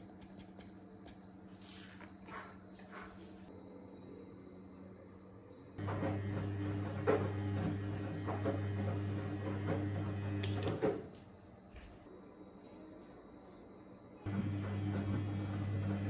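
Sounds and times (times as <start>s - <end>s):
electric appliance humming: 5.8s - 11.0s, 14.3s - 16.0s.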